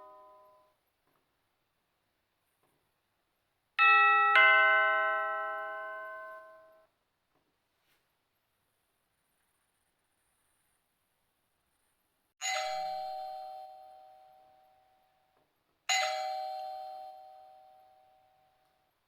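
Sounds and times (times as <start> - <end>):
doorbell chime: 0.0 - 0.7, 3.8 - 6.9, 12.4 - 18.7.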